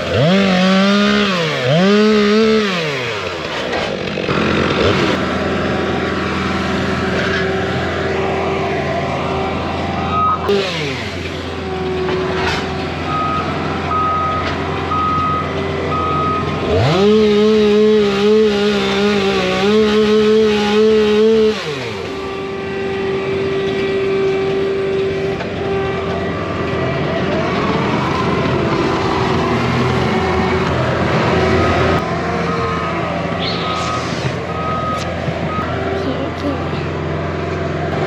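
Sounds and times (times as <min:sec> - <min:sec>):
engine revving: 0:00.0 - 0:38.0
machinery engine running: 0:00.0 - 0:38.0
reversing alarm beeping: 0:10.0 - 0:10.6, 0:13.0 - 0:16.9, 0:31.3 - 0:36.2.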